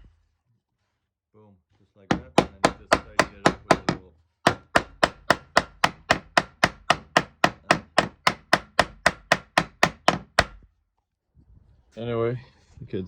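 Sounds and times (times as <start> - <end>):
hammer peening rivet on anvil: 2.1 - 10.6.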